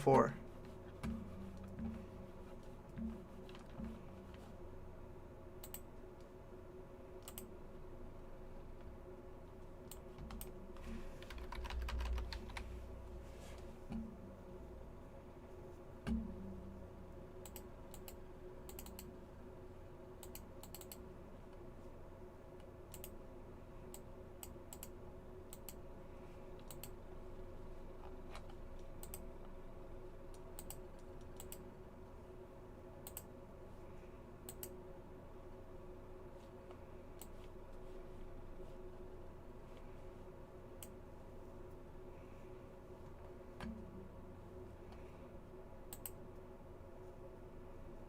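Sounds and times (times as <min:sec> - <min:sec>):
steady low hum: 0:00.0 - 0:48.0
typing on computer keyboard: 0:11.2 - 0:12.7, 0:20.2 - 0:21.0.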